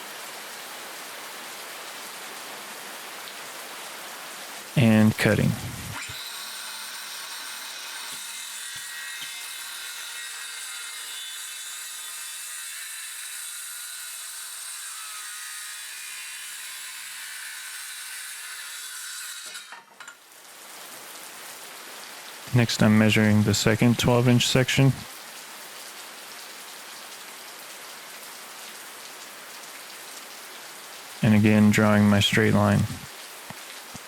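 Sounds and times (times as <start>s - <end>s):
circular saw cutting wood: 5.9s - 19.9s.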